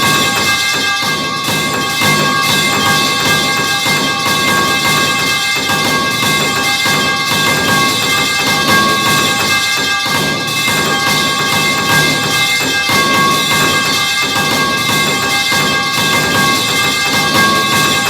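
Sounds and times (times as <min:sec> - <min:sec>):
music with sustained ringing tones: 0:00.0 - 0:18.0
percussion: 0:00.0 - 0:18.0.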